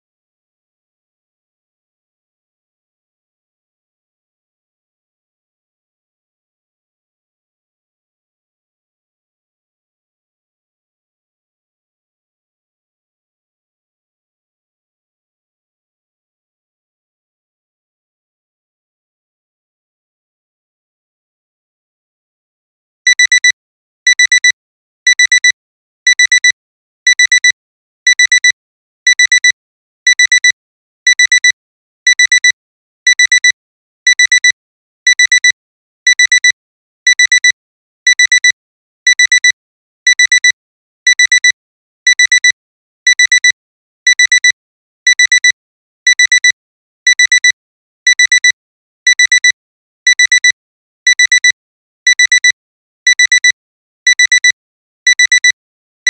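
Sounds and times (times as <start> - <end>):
digital alarm clock beeping: 23.1 - 23.5, 24.1 - 24.5, 25.1 - 25.5, 26.1 - 26.5, 27.1 - 27.5, 28.1 - 28.5, 29.1 - 29.5, 30.1 - 30.5, 31.1 - 33.5, 34.1 - 35.5, 36.1 - 36.5, 37.1 - 37.5, 38.1 - 38.5, 39.1 - 44.5, 45.1 - 55.6.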